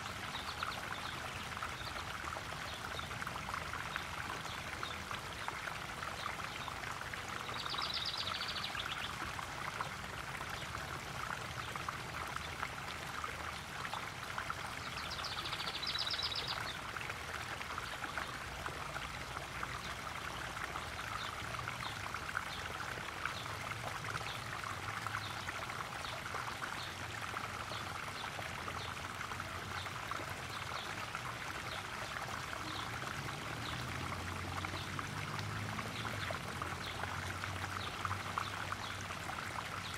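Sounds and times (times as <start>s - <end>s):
waterfall splashing into pond: 0.0s - 39.9s.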